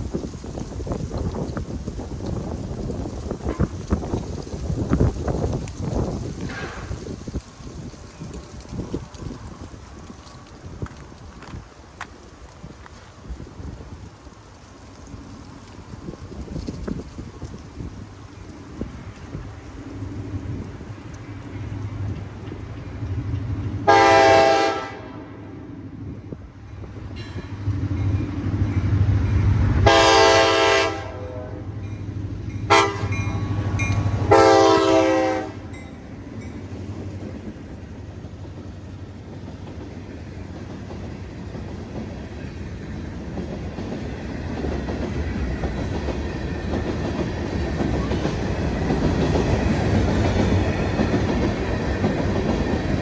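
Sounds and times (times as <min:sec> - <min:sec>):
train rumbling past: 0:00.0 - 0:53.0
locomotive horn blasts: 0:23.8 - 0:25.4, 0:29.8 - 0:31.8, 0:32.7 - 0:35.8.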